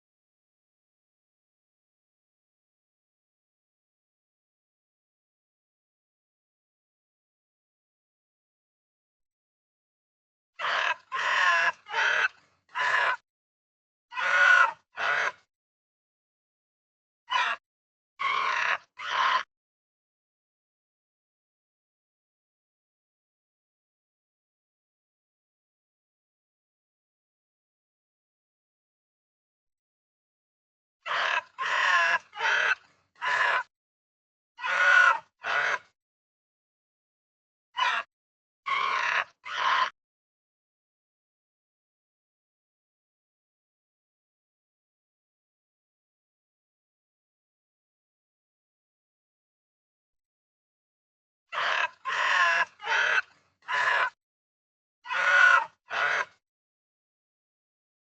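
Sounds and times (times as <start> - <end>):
pig squealing: 10.6 - 13.2, 14.1 - 15.5, 17.3 - 17.6, 18.2 - 19.5, 31.1 - 33.7, 34.6 - 35.9, 37.8 - 38.1, 38.7 - 40.0, 51.5 - 54.2, 55.1 - 56.4.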